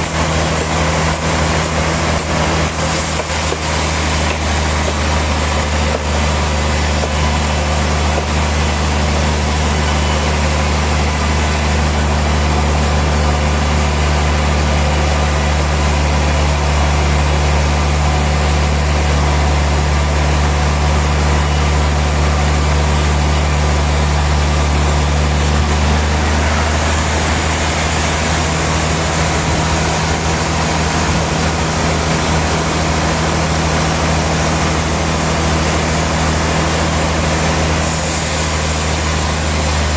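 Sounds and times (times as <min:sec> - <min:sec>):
machinery hiss: 0:00.0 - 0:39.9
sawmill machinery humming: 0:00.0 - 0:39.9.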